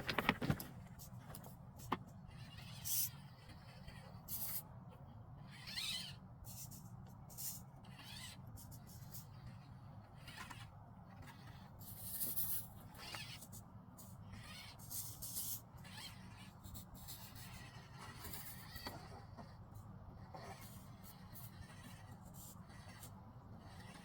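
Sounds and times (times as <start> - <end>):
small electric motor whining: 5.4 - 6.8, 7.4 - 24.0.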